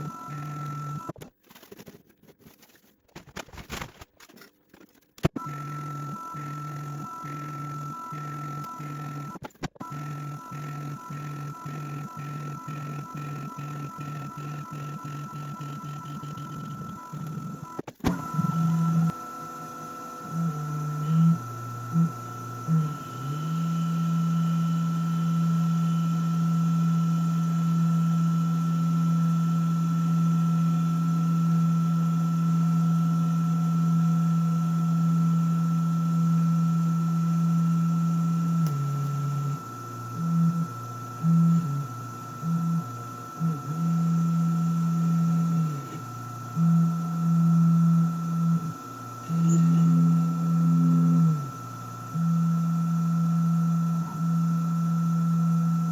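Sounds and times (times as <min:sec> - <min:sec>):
low motor hum: 0:00.0 - 0:01.1, 0:05.3 - 0:55.9
mill high whine: 0:00.0 - 0:55.9.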